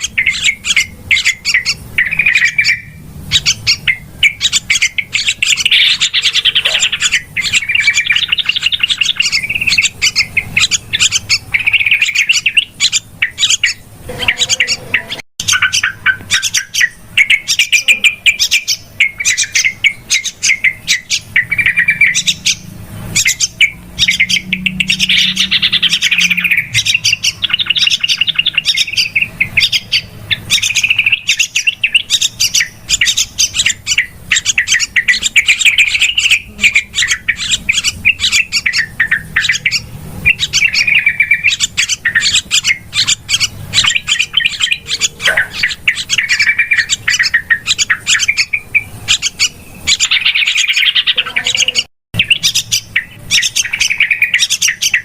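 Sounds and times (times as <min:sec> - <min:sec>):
birds chattering: 0:00.0 - 0:55.0.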